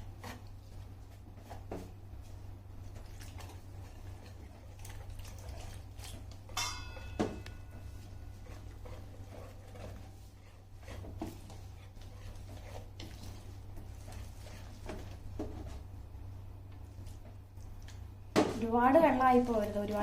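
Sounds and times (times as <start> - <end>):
spoon stirring thick batter: 0.0 - 18.3
low steady hum: 0.0 - 20.0
spoon clinking against bowl: 6.5 - 7.9.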